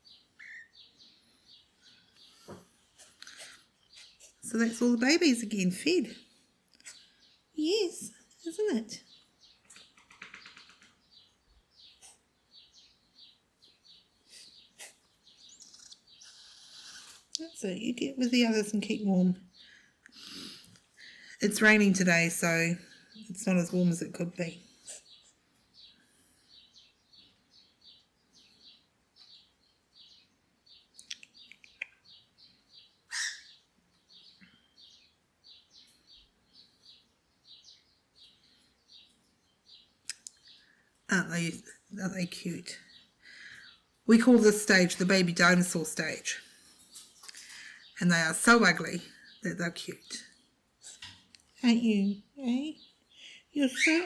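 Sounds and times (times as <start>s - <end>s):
bird chicks chirping: 0.0s - 54.0s
sharp clicks: 9.6s - 11.0s
chicks peeping: 14.3s - 17.4s.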